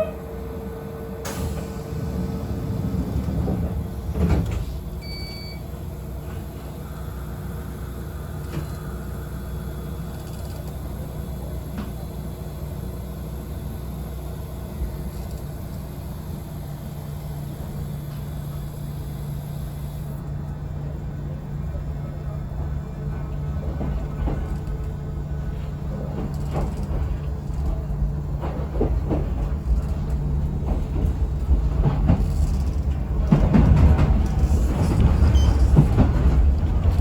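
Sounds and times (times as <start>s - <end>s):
electric train hum: 0.0s - 37.0s
short electronic beep: 5.0s - 5.6s.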